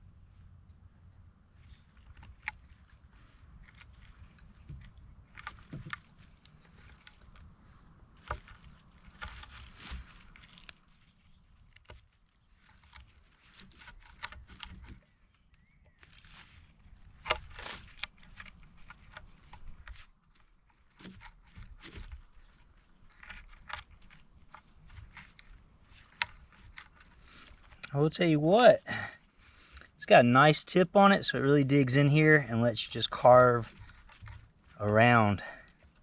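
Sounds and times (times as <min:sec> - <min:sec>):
knife scraping wood: 0:01.6 - 0:28.0, 0:32.4 - 0:36.0.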